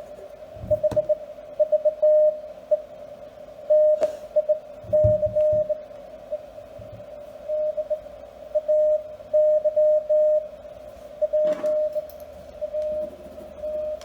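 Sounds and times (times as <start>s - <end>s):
radio hiss: 0.0s - 11.9s
morse code tone: 0.6s - 2.4s, 3.7s - 5.8s, 11.2s - 14.0s.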